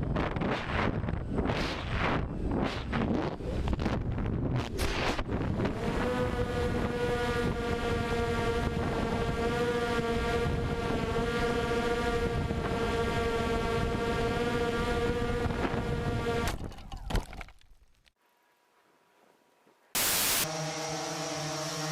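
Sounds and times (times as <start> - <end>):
drone propellers humming: 0.0 - 16.6, 20.0 - 21.9
wind on microphone: 0.0 - 16.8.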